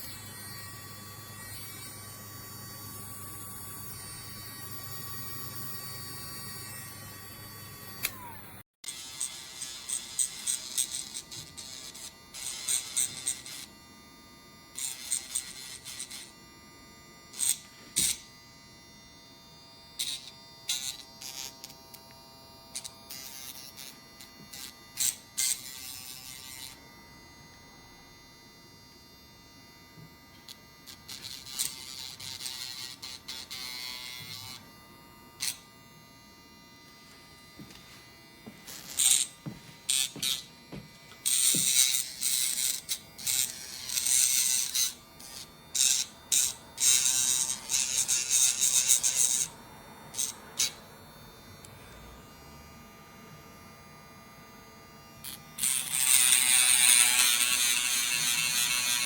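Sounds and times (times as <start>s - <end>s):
nail grinder motor whine: 0.0s - 14.0s, 19.9s - 28.6s, 29.9s - 36.1s, 37.1s - 53.4s, 55.1s - 59.0s
grinding on nails: 41.2s - 49.5s, 55.3s - 59.0s.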